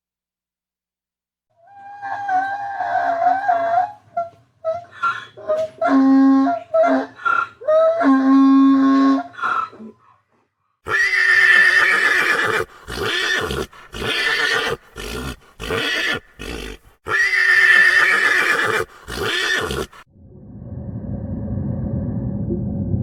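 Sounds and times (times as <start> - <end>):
horse whinnying: 10.9 - 20.1.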